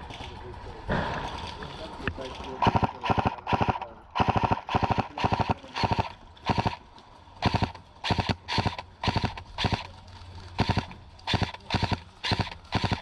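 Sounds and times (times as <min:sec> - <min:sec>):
airsoft rifle firing bursts: 0:02.6 - 0:06.8, 0:07.4 - 0:09.9, 0:10.6 - 0:13.0.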